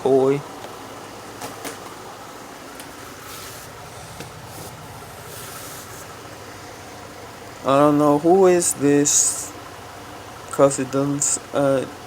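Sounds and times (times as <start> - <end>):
background hiss: 0.0 - 12.0
soft rustles: 2.7 - 6.2.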